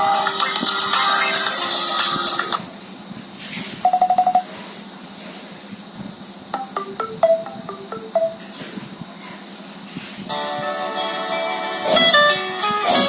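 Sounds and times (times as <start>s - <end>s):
phone beeps: 3.8s - 4.5s
electronic phone melody: 6.6s - 8.6s.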